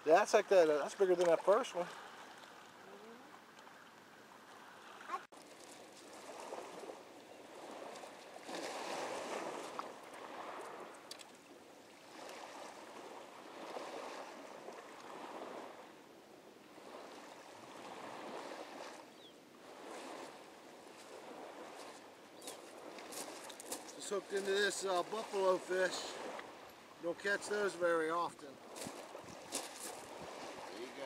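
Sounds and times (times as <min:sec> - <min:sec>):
water washing against bank: 0:00.0 - 0:03.8, 0:04.5 - 0:15.8, 0:16.8 - 0:31.0.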